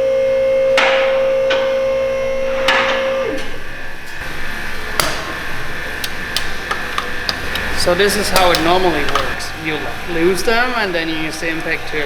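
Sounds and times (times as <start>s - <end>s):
whining tone gliding down: 0.0s - 4.0s.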